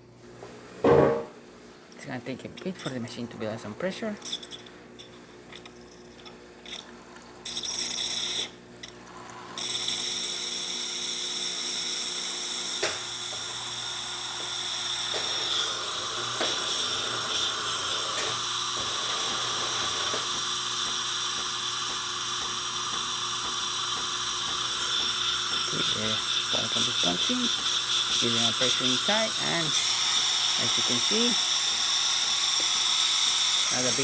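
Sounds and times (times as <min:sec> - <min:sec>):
steam wand hissing: 0:09.6 - 0:34.0.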